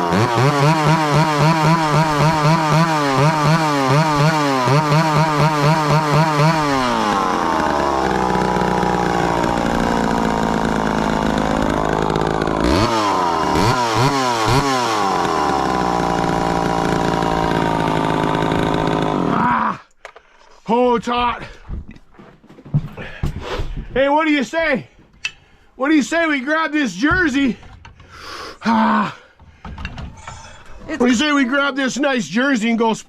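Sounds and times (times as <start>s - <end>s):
chainsaw engine revving: 0.0s - 19.8s.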